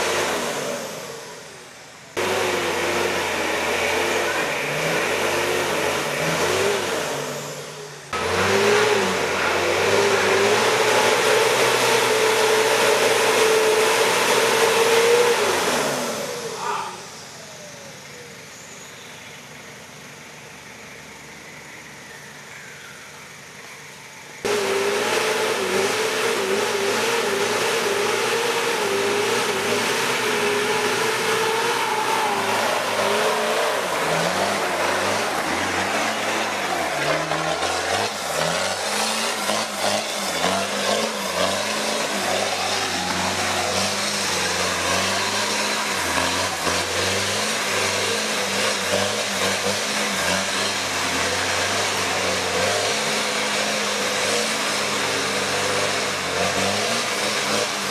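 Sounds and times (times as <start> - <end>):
vehicle engine revving: 0.0 - 18.8, 24.3 - 57.9.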